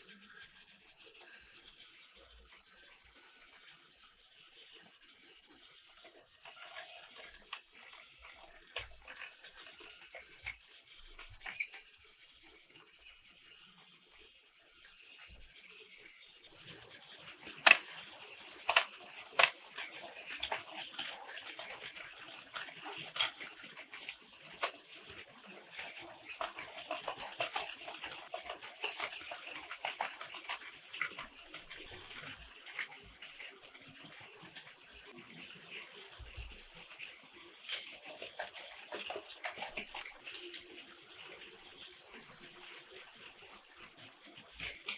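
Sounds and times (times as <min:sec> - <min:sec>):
toy train rattling on track: 0:00.0 - 0:44.9
sharp loud clicks: 0:18.7 - 0:19.6.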